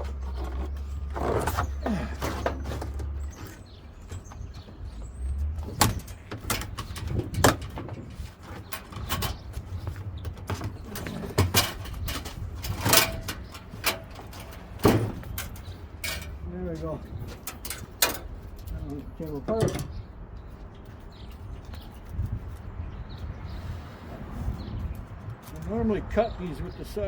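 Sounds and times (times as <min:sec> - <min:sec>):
hand tools clanking on metal: 0:00.0 - 0:04.4, 0:05.4 - 0:09.6, 0:10.4 - 0:20.0.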